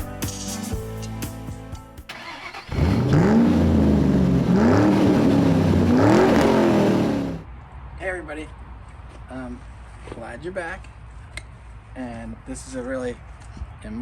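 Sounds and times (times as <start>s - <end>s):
background music: 0.0s - 2.4s
car engine revving: 2.1s - 7.5s.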